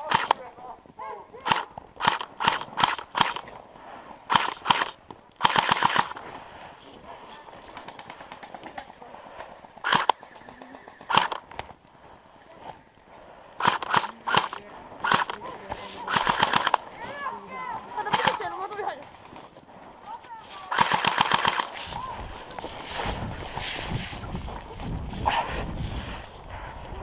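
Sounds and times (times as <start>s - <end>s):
airsoft guns firing: 0.0s - 0.5s, 1.4s - 3.5s, 4.3s - 6.2s, 9.8s - 10.2s, 11.1s - 11.4s, 13.6s - 16.9s, 18.0s - 18.5s, 20.7s - 21.8s.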